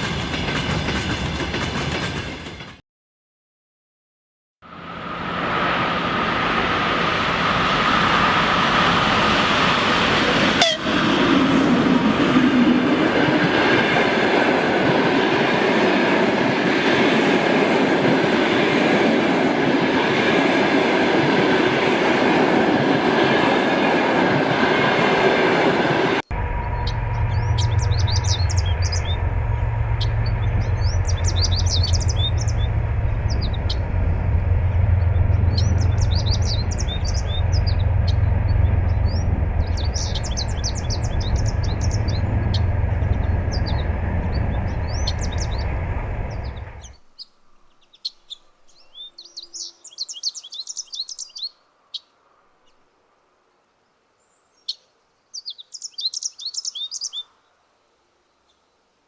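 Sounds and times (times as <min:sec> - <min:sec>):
train rumbling: 0:00.0 - 0:02.8, 0:04.7 - 0:47.1
birds chirping: 0:26.2 - 0:52.8, 0:54.2 - 0:57.4
faint high whine: 0:26.3 - 0:46.9
low steady hum: 0:26.3 - 0:46.9.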